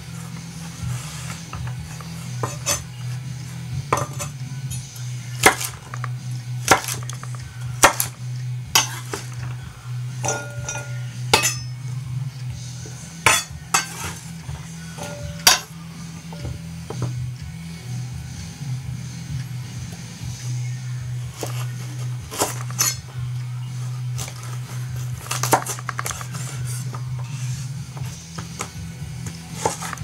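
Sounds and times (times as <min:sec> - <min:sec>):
knife cutting on cutting board: 0:02.4 - 0:02.8, 0:06.7 - 0:07.2.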